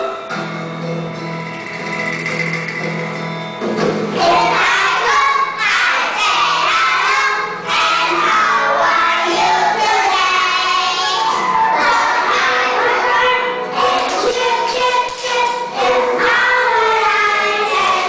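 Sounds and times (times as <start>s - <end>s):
backing track music: 0.0s - 18.0s
children singing: 4.2s - 18.0s.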